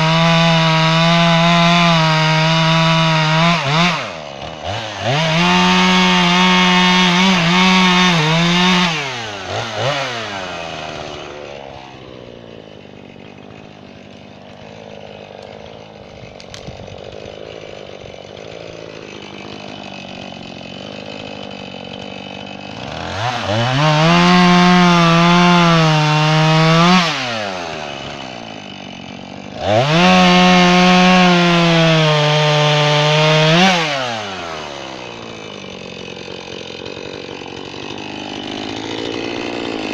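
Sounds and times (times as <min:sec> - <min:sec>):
chainsaw cutting wood: 0:00.0 - 0:39.9
chainsaw idling: 0:00.0 - 0:39.9.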